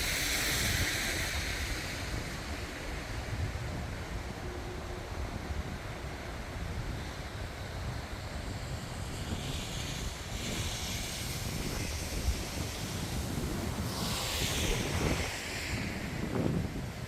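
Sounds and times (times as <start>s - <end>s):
wet tyres hissing and spray: 0.0s - 3.2s, 7.7s - 17.0s.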